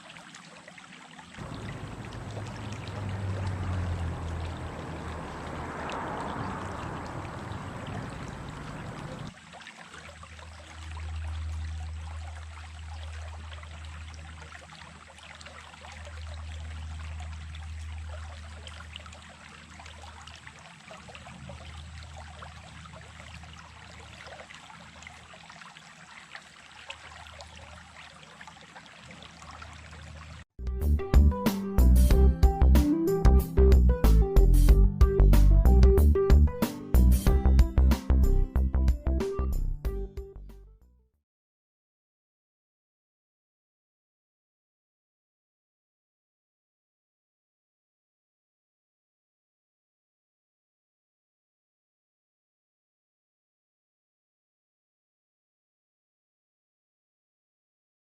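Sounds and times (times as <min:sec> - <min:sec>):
creek water rushing: 0:00.0 - 0:30.4.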